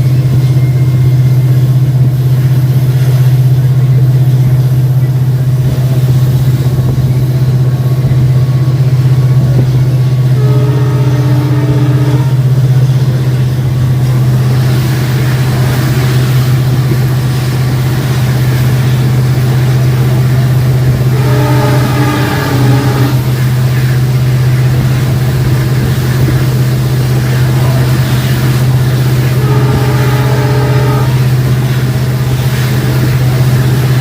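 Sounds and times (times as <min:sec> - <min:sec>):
diesel locomotive engine humming: 0:00.0 - 0:34.0
higher tone: 0:07.4 - 0:13.4, 0:19.9 - 0:24.1.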